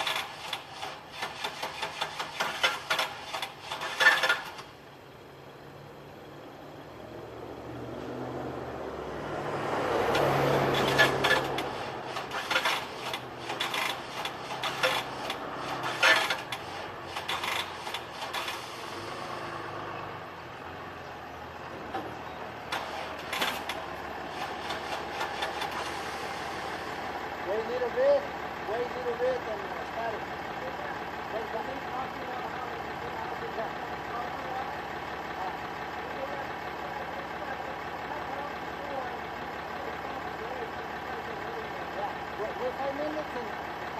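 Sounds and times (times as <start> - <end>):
car starter cranking: 0.0 - 4.8, 10.1 - 19.1, 22.6 - 26.9.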